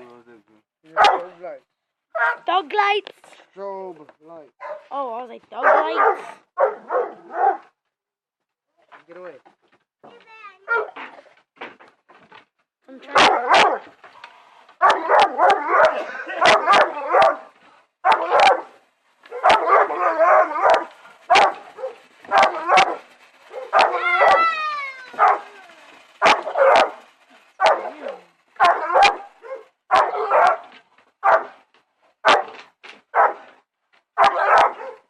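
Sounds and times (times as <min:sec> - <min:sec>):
dog barking: 0:01.0 - 0:01.4, 0:02.1 - 0:02.4, 0:04.6 - 0:04.9, 0:05.6 - 0:07.7, 0:10.7 - 0:11.0, 0:13.1 - 0:13.9, 0:14.8 - 0:24.4, 0:25.1 - 0:25.5, 0:26.2 - 0:27.0, 0:27.6 - 0:31.6, 0:32.2 - 0:33.5, 0:34.2 - 0:35.0
dog yelping: 0:02.2 - 0:02.4, 0:04.6 - 0:04.9, 0:05.6 - 0:07.7, 0:10.6 - 0:11.0, 0:13.1 - 0:13.9, 0:14.8 - 0:25.6, 0:26.2 - 0:31.6, 0:32.2 - 0:32.6, 0:33.2 - 0:33.5, 0:34.2 - 0:35.0.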